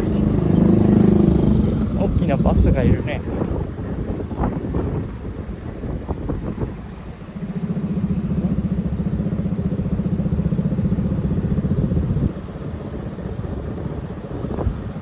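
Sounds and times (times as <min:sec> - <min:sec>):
bus engine low pulsing rumble: 0:00.0 - 0:15.0
street traffic noise: 0:00.0 - 0:15.0.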